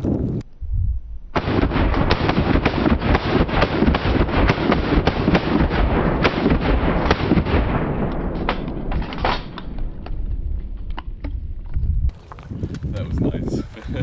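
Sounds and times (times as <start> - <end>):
shotgun blasts: 1.4 - 10.4.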